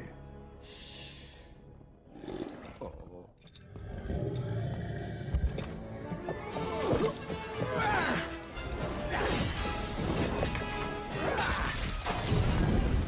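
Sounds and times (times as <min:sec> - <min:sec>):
soundtrack music: 0:04.4 - 0:13.0.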